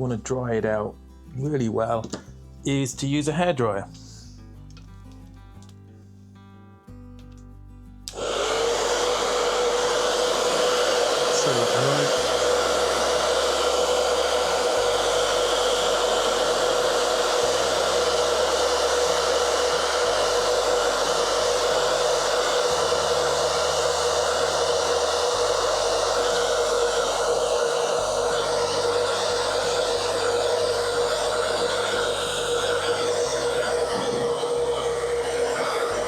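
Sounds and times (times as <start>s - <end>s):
hair dryer running: 8.1s - 36.0s.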